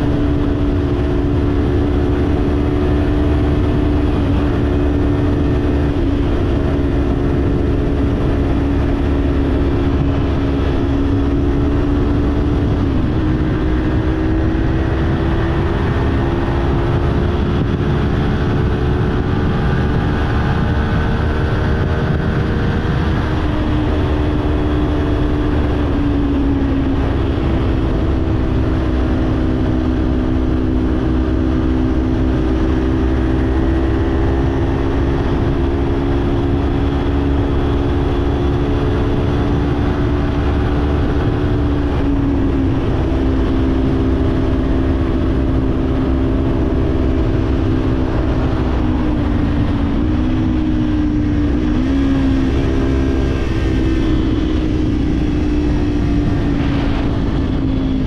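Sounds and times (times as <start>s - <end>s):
motorcycle engine cruising: 0.0s - 58.0s
wind and road rumble: 0.0s - 58.0s.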